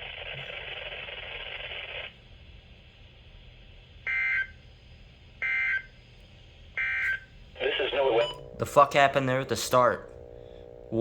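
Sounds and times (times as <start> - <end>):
radio hiss: 0.0 - 2.2, 7.6 - 11.0.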